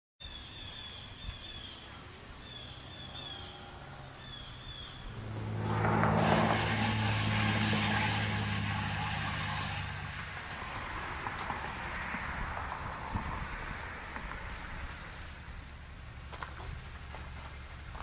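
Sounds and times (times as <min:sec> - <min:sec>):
vehicle engine humming: 0:01.4 - 0:18.0.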